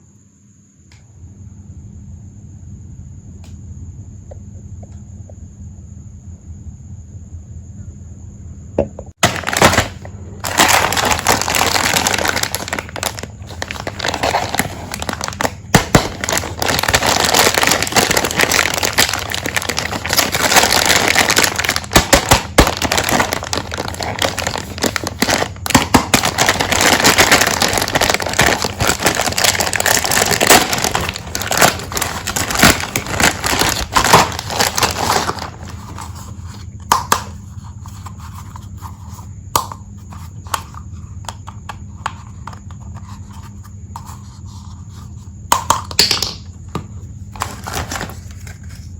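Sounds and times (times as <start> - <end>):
plastic packaging crinkling: 9.2 - 36.6, 47.4 - 48.9.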